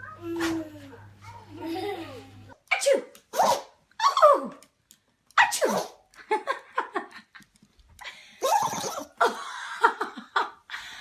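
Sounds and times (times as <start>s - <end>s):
dog sneezing: 3.3s - 3.8s, 5.4s - 6.1s.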